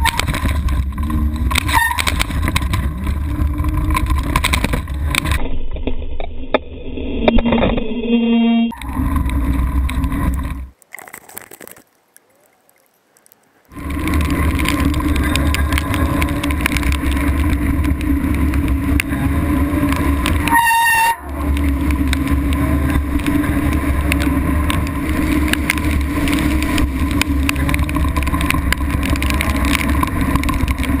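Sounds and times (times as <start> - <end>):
scooter engine running: 13.8 - 31.0
short high horn toot: 20.5 - 21.4.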